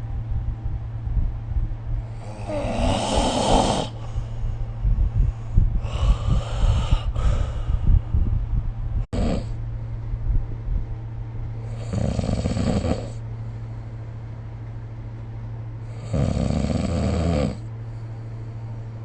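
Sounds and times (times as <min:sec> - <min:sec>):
steady low hum: 0:00.0 - 0:19.0
person snoring: 0:02.1 - 0:04.2, 0:05.8 - 0:07.7, 0:09.2 - 0:09.6, 0:11.7 - 0:13.2, 0:15.9 - 0:17.7.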